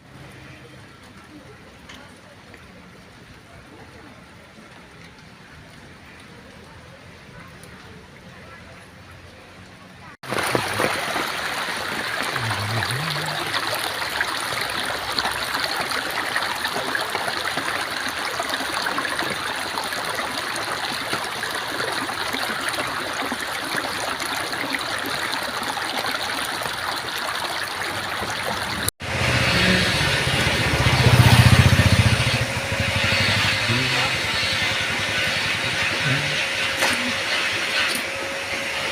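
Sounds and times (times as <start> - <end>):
heavy rain: 10.2 - 23.0, 28.0 - 35.6
vehicle engine: 28.7 - 38.9.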